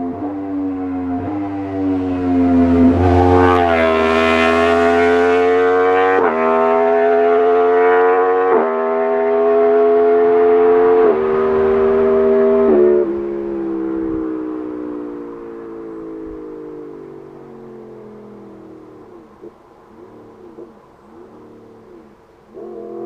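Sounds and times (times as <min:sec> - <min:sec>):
motorcycle engine at high revs: 0:00.0 - 0:23.0.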